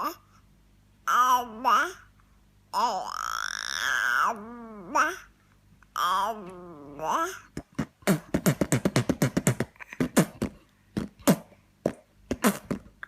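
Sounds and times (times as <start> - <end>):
man beatboxing: 7.6 - 12.9.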